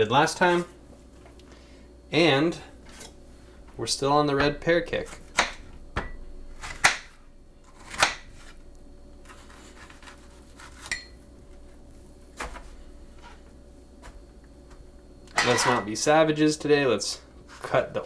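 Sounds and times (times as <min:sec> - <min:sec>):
pears knocking in kitchen: 0:04.4 - 0:07.2, 0:07.8 - 0:08.5.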